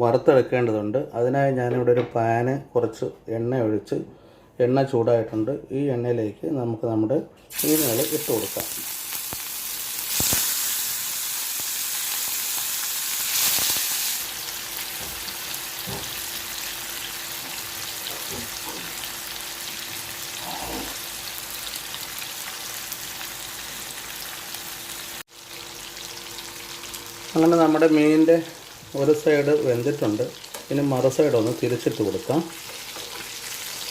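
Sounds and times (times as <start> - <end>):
fish sizzling in hot oil: 7.5 - 33.9.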